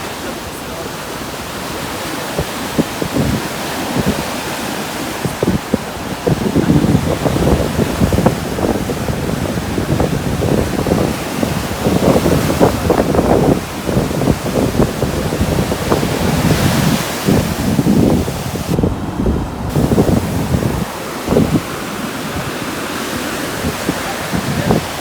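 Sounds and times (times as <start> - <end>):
ocean surf hiss: 0.0 - 8.7, 11.3 - 25.0
strong wind buffeting microphone: 0.0 - 25.0.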